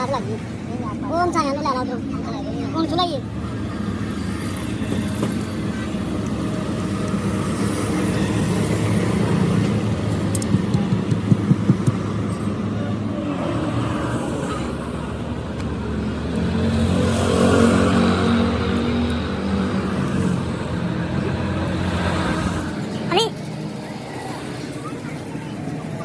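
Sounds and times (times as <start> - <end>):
engine running: 0.0 - 26.0
sharp knocks: 10.5 - 12.2.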